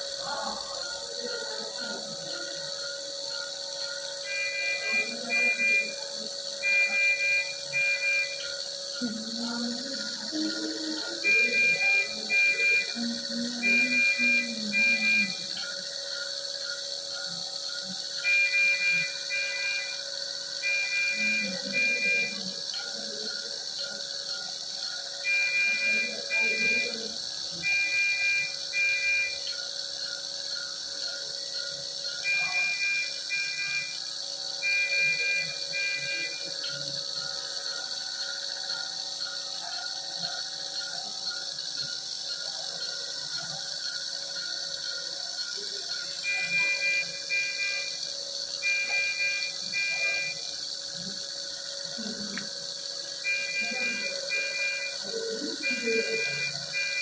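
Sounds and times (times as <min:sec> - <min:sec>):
high electronic alarm beeps: 0:00.0 - 0:57.0
short lower beeps: 0:53.3 - 0:57.0.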